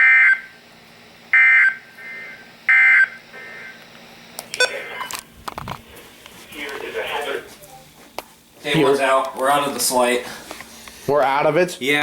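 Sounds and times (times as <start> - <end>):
data bursts: 1.3 - 5.2.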